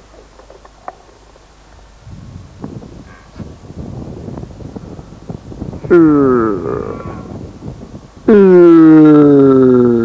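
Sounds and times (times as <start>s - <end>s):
wind buffeting microphone: 1.8s - 8.6s.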